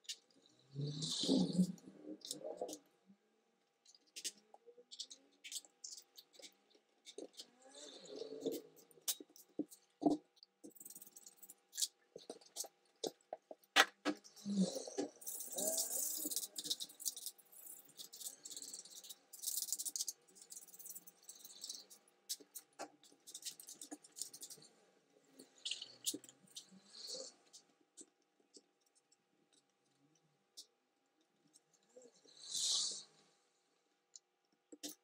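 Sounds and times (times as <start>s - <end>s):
small rattles: 3.8s - 24.7s.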